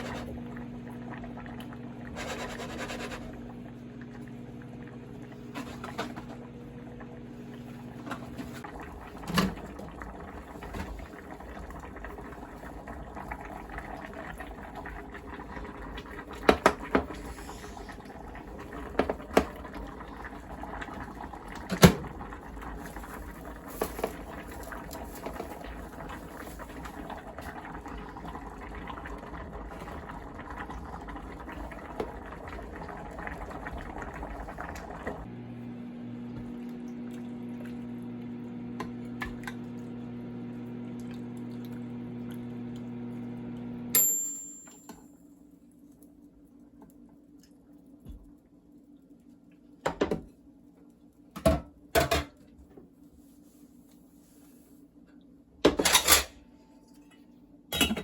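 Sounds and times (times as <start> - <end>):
stew bubbling: 0.0 - 35.3.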